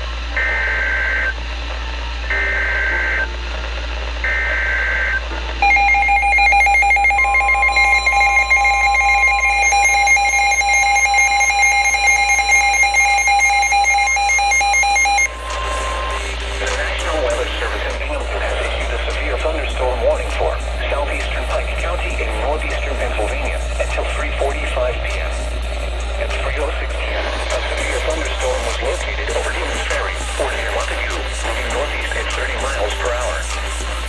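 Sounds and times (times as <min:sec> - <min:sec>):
warbling two-tone data screech: 0:05.6 - 0:15.3
steady warning alert tone: 0:05.6 - 0:16.2.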